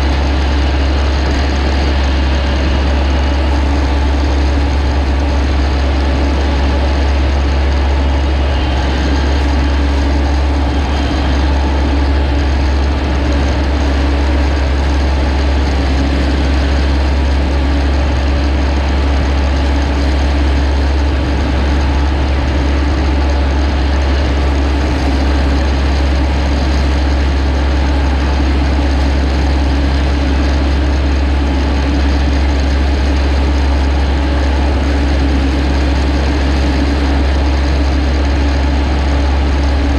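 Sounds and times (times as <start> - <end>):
harvester engine droning: 0.0 - 39.9.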